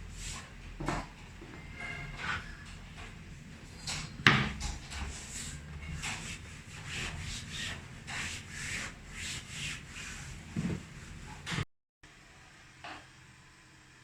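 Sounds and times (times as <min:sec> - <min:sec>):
rubbing strokes: 0:01.5 - 0:11.6.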